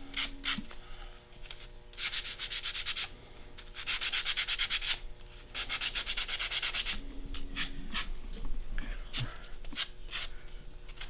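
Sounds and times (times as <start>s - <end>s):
sandpaper rubbing on foam: 3.8s - 5.0s, 5.6s - 7.0s.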